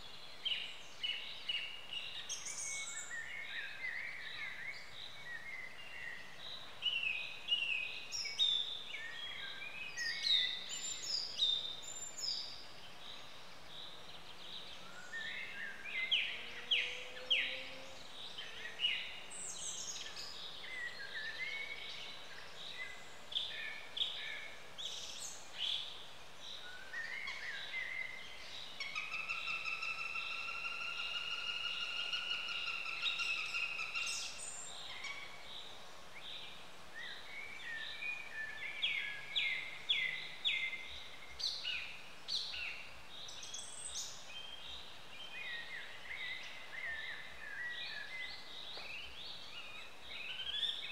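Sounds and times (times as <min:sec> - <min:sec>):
woodland background hiss: 0:00.0 - 0:50.9
birds chirping and trilling: 0:13.8 - 0:50.9.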